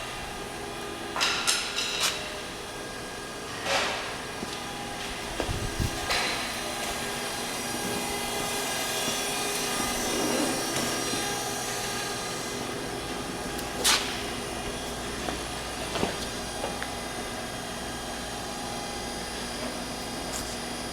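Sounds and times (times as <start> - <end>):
grinder whirring and whining: 4.2 - 20.9.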